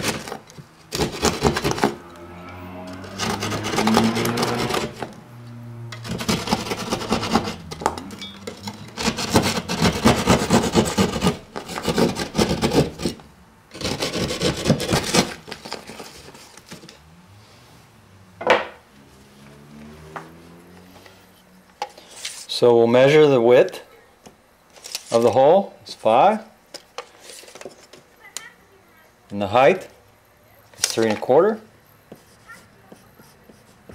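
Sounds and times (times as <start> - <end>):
hand saw cutting drywall: 0.0 - 2.0, 2.9 - 5.2, 6.0 - 7.8, 8.5 - 16.4.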